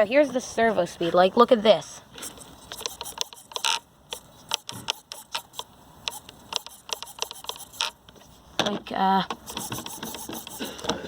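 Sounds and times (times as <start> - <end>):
servo clicking and buzzing: 2.2 - 8.2, 9.4 - 10.9.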